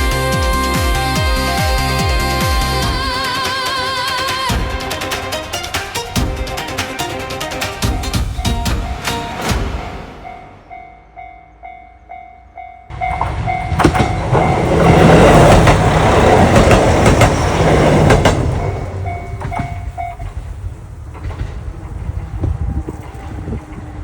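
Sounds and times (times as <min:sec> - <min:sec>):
train rushing past: 0:00.0 - 0:24.0
train wheel clacks: 0:02.9 - 0:09.9, 0:12.9 - 0:24.0
railroad crossing bell dinging: 0:07.7 - 0:15.8, 0:16.9 - 0:20.5.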